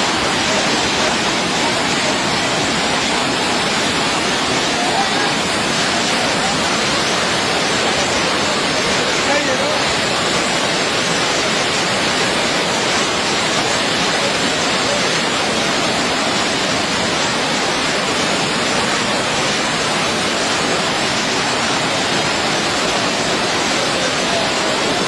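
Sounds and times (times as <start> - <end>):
water rushing through spillway: 0.0 - 25.0.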